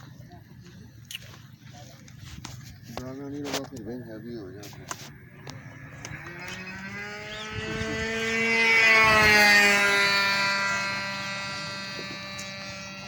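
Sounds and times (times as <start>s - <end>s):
model airplane motor whine: 4.7s - 13.0s.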